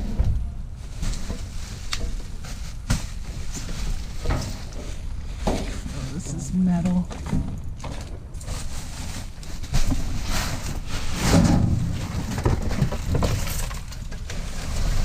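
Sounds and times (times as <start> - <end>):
steady low rumble: 0.0 - 13.2
scrap metal clanking: 7.3 - 15.0.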